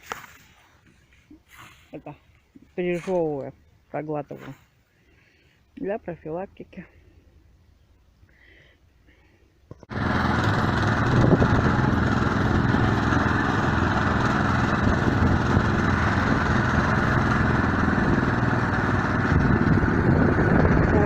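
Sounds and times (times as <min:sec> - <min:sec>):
vehicle engine running: 0:09.8 - 0:21.0
wind noise: 0:10.0 - 0:21.0.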